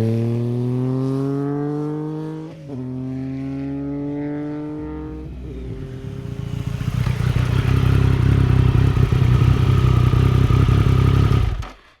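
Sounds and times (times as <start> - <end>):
motorcycle engine running: 3.7 - 12.0.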